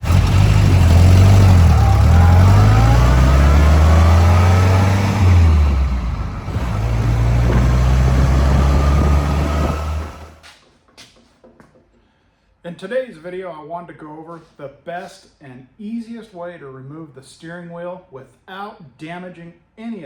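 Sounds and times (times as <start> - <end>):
vehicle engine revving: 0.0 - 10.4.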